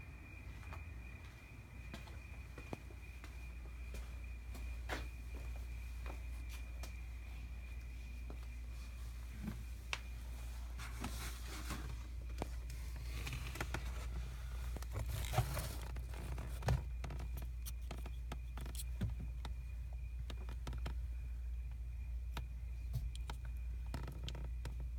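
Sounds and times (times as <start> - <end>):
steady low hum: 0.0 - 24.9
things being handled: 14.7 - 19.0.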